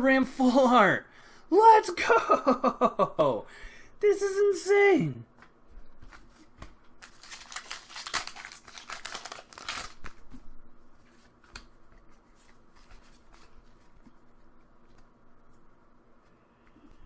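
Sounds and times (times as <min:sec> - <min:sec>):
cards being handled clicks: 0:05.4 - 0:10.2
foil wrapper crinkling and tearing: 0:07.0 - 0:10.2.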